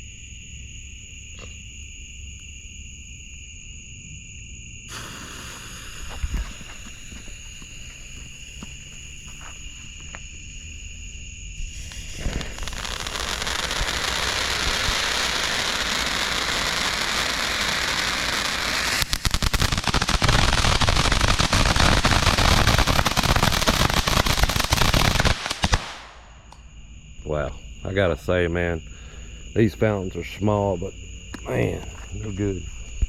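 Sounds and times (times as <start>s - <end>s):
firework fountain hissing: 4.9s - 9.4s, 11.6s - 26.5s
firework fountain crackling: 4.9s - 9.7s, 11.6s - 26.5s.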